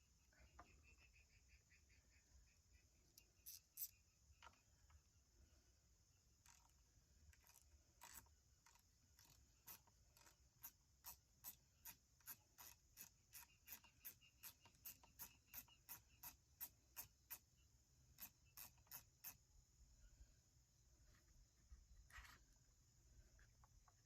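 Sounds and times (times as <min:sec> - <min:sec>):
faint scraping strokes: 0:21.0 - 0:22.6.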